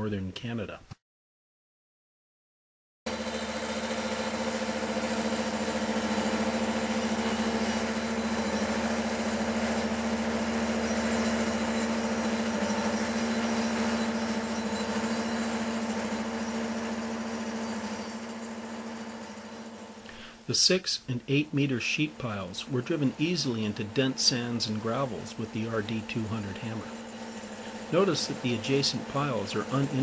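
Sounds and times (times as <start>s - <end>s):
pile driver humming: 3.1s - 30.0s.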